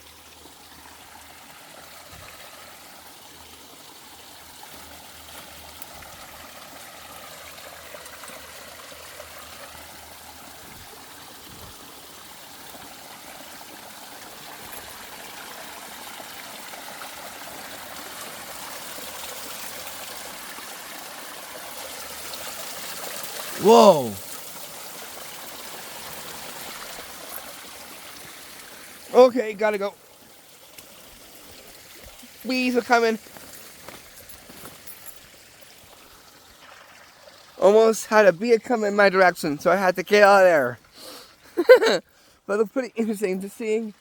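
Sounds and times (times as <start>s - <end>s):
small stream trickling: 0.0s - 44.0s.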